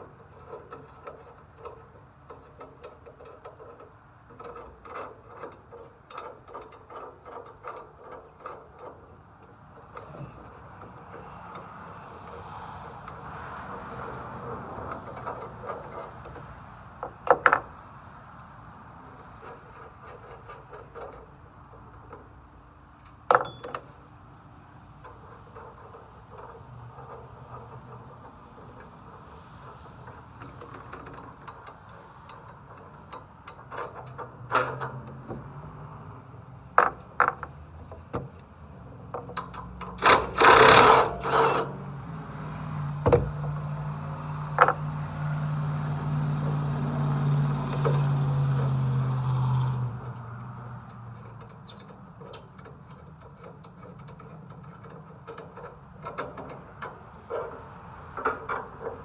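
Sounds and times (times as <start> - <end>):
tools and metal parts knocking: 0.0 - 17.8, 19.2 - 22.4, 23.3 - 24.0, 25.0 - 35.6, 36.6 - 41.8, 44.4 - 45.0, 50.9 - 59.0.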